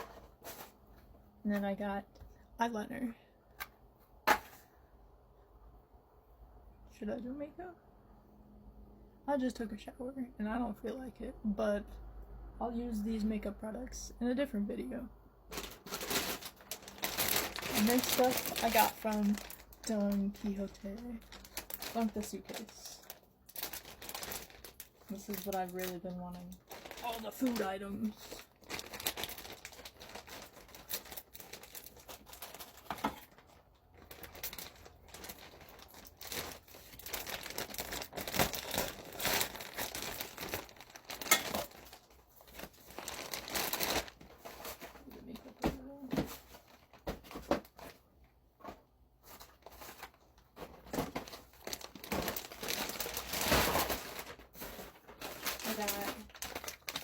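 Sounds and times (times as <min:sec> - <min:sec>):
plastic packaging rustling: 0:00.0 - 0:01.2, 0:15.5 - 0:57.0
wrappers tearing: 0:15.5 - 0:45.0, 0:50.9 - 0:57.0.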